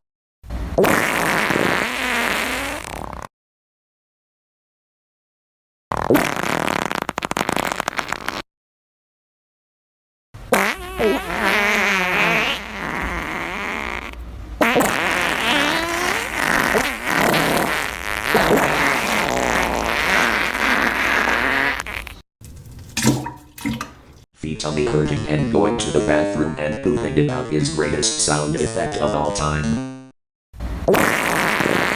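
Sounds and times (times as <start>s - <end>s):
fart noises: 0.8s - 3.3s, 5.9s - 8.4s, 10.5s - 24.2s, 30.9s - 31.9s.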